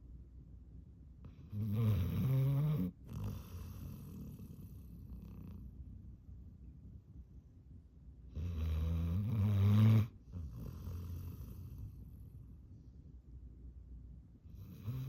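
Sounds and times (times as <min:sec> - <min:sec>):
dog snoring: 0:01.2 - 0:05.8, 0:08.3 - 0:12.3, 0:14.5 - 0:15.0.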